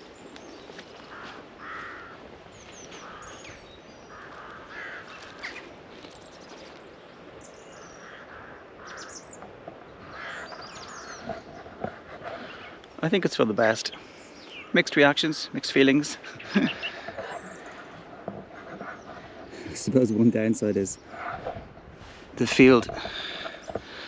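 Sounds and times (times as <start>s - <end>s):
small birds chirping: 0.0s - 24.0s
crows cawing: 0.7s - 6.1s, 7.8s - 12.8s, 16.2s - 19.6s, 22.9s - 24.0s.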